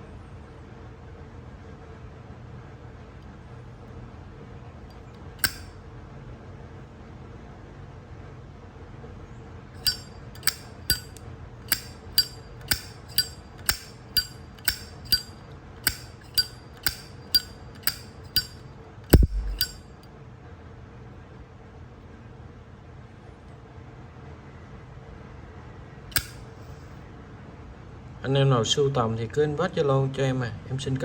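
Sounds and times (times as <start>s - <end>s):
lighter lid clinking: 5.4s - 5.7s, 9.8s - 19.8s, 26.1s - 26.4s
heavy dull knock: 19.2s - 19.6s.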